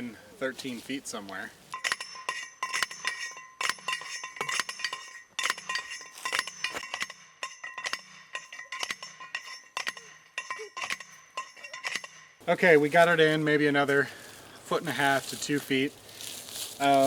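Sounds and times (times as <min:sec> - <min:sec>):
metal pipe struck and ringing: 0:01.7 - 0:12.6.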